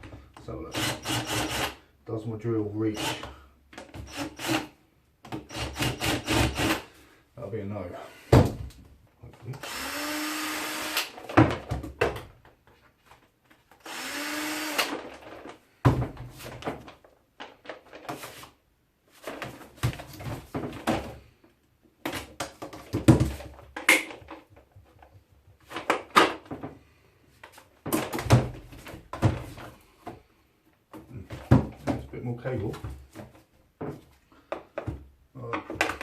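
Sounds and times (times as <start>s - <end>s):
electric drill-driver spinning: 0.7s - 1.8s, 4.1s - 4.7s, 5.5s - 6.8s, 9.6s - 11.2s, 13.8s - 15.1s.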